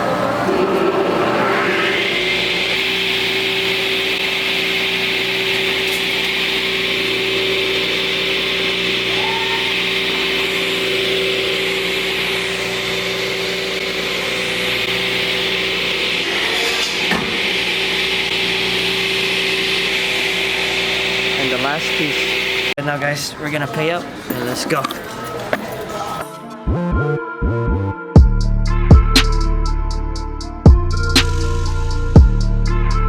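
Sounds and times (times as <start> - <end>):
power saw cutting plywood: 0.0 - 22.8.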